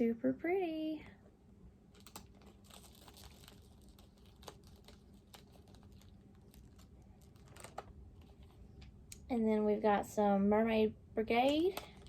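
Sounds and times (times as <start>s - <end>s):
packets clicking and crinkling: 1.9s - 8.9s.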